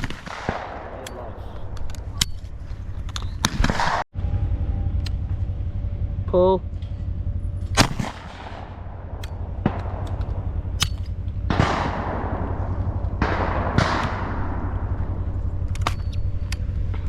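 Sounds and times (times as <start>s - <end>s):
shotgun shots with echoes: 0.0s - 1.4s, 7.8s - 8.8s, 9.4s - 15.2s
steady low rumble: 0.0s - 17.0s.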